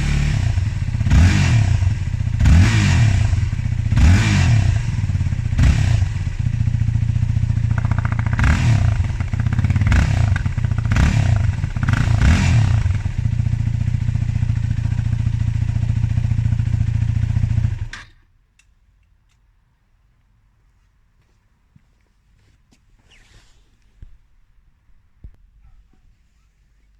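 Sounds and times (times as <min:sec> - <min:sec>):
motorcycle engine idling and revving: 0:00.0 - 0:18.0.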